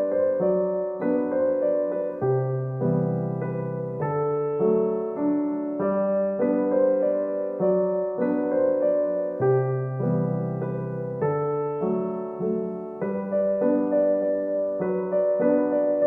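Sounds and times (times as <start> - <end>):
slow piano melody: 0.0 - 16.0.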